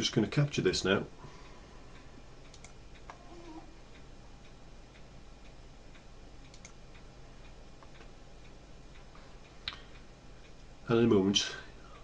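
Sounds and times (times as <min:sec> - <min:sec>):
low electrical hum: 0:00.0 - 0:12.0
faint light ticks and clicks: 0:01.2 - 0:10.8.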